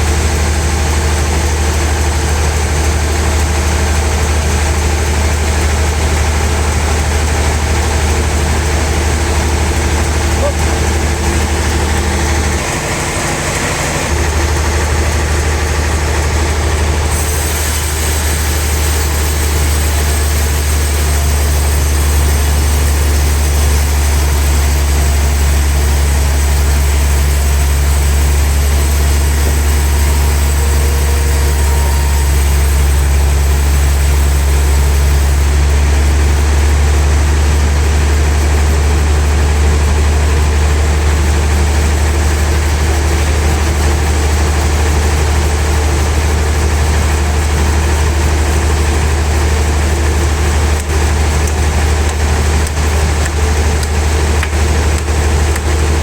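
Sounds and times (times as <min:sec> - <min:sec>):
saw machine humming: 0:00.0 - 0:56.0
saw hiss: 0:07.9 - 0:36.4.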